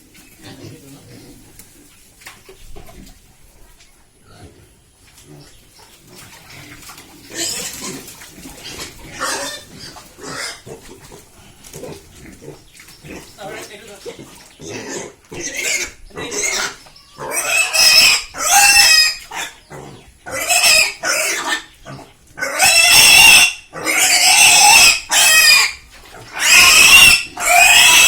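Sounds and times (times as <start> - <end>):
pig squealing: 7.3 - 10.7, 14.6 - 28.0.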